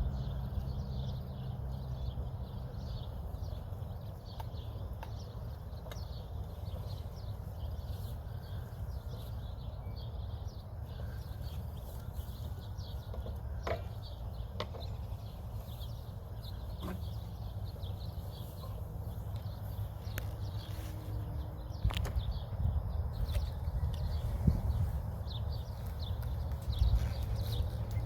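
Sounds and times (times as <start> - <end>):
birds chirping: 0.0 - 28.0
steady low rumble: 17.4 - 28.0.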